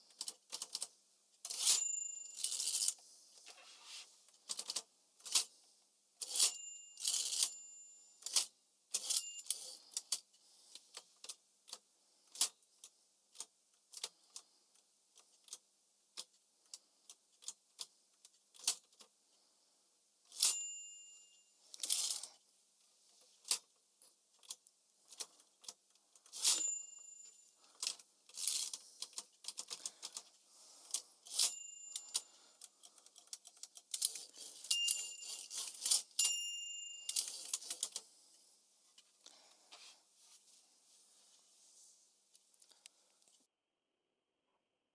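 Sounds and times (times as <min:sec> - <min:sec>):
typewriter margin bell ding: 0:01.6 - 0:02.9, 0:06.3 - 0:08.0, 0:09.0 - 0:09.8, 0:20.4 - 0:22.2, 0:26.4 - 0:27.4, 0:31.4 - 0:32.3, 0:34.6 - 0:37.6.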